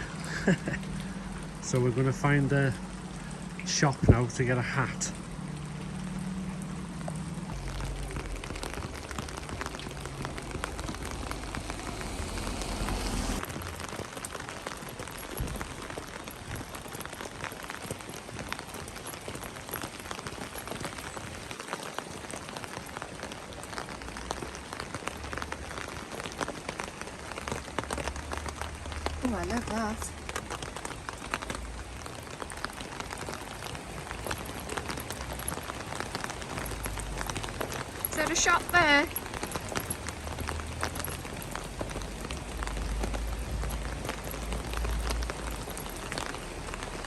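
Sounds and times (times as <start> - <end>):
heavy rain falling: 0.0 - 47.0
low rumble: 2.7 - 13.5.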